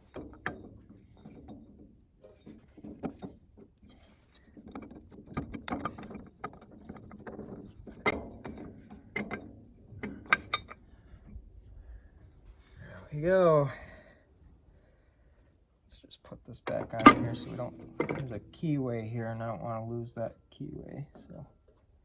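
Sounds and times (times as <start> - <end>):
metal clicks clanks and scrapes: 0.0 - 10.9, 16.6 - 18.8
sharp metal knocks: 16.7 - 18.7.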